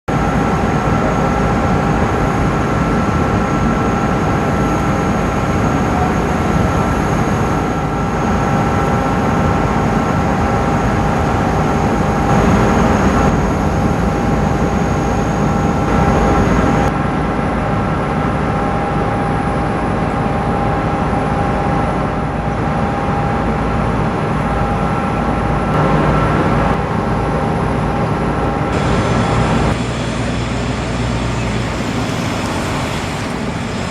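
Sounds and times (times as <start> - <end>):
jet engines rushing: 0.1 - 17.2, 28.5 - 33.9
jet engine whine: 0.1 - 33.9.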